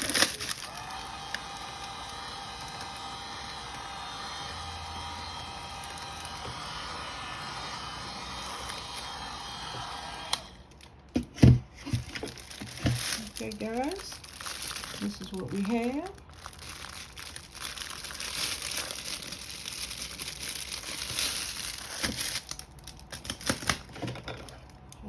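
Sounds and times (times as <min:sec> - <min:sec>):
heat gun whirring: 0:00.0 - 0:10.8.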